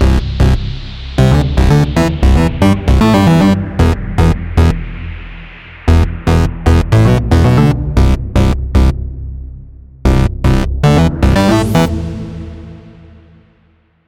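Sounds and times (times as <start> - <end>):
rising synth sweep: 0.0 - 9.5, 10.8 - 13.8
held synth chord: 10.8 - 13.8.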